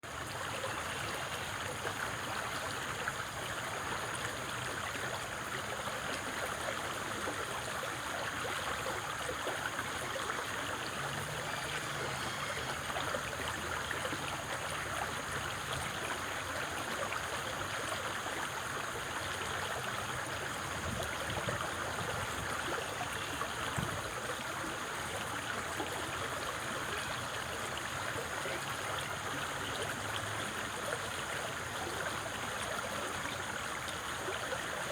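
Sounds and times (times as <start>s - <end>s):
water rushing: 0.1s - 34.9s.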